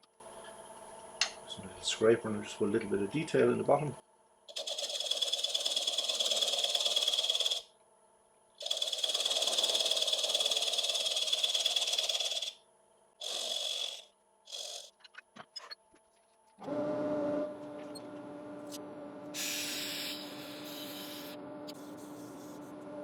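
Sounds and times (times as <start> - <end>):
scraper cutting wood on a lathe: 4.5 - 7.6, 8.6 - 12.5, 13.2 - 14.9.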